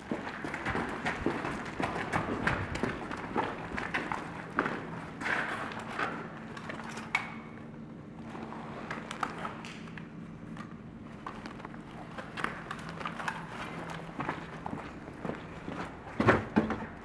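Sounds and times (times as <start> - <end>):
footsteps and gear scuffs: 10.4 - 17.0.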